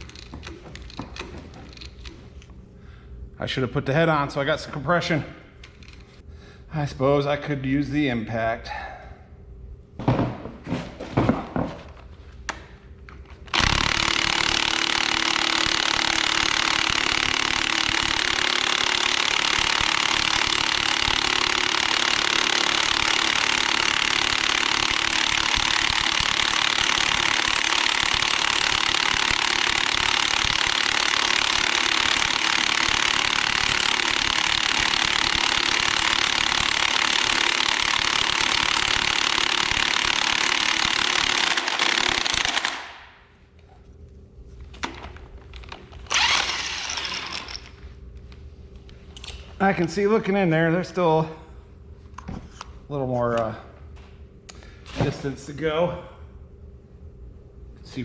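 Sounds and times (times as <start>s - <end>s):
impact wrench hammering: 13.5s - 43.1s.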